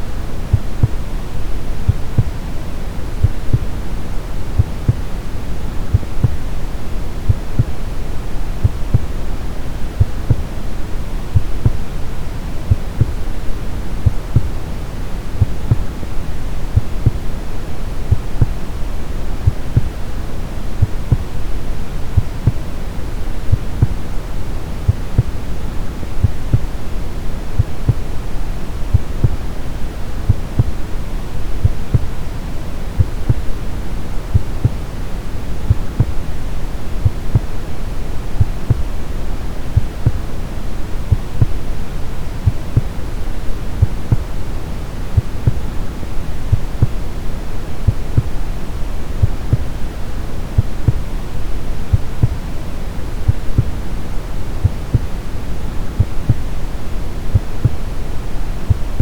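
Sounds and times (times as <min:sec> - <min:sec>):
brown noise hiss: 0:00.0 - 0:59.0
heartbeat thumps: 0:00.5 - 0:01.1, 0:01.8 - 0:02.4, 0:03.2 - 0:03.8, 0:04.6 - 0:05.2, 0:05.9 - 0:06.5, 0:07.2 - 0:08.0, 0:08.6 - 0:09.2, 0:10.0 - 0:10.6, 0:11.3 - 0:11.9, 0:12.7 - 0:14.6, 0:15.4 - 0:16.1, 0:16.7 - 0:17.3, 0:18.1 - 0:18.6, 0:19.4 - 0:20.0, 0:20.8 - 0:21.4, 0:22.1 - 0:22.7, 0:23.4 - 0:24.1, 0:24.9 - 0:26.8, 0:27.6 - 0:28.1, 0:28.9 - 0:29.5, 0:30.2 - 0:30.8, 0:31.6 - 0:32.1, 0:33.0 - 0:33.6, 0:34.3 - 0:34.9, 0:35.7 - 0:36.3, 0:37.0 - 0:37.7, 0:38.4 - 0:39.2, 0:39.8 - 0:40.3, 0:41.1 - 0:41.7, 0:42.4 - 0:44.4, 0:45.2 - 0:47.0, 0:47.8 - 0:48.4, 0:49.2 - 0:49.8, 0:50.5 - 0:51.1, 0:51.9 - 0:52.5, 0:53.3 - 0:53.8, 0:54.6 - 0:55.2, 0:55.9 - 0:56.5, 0:57.3 - 0:57.9, 0:58.7 - 0:59.0.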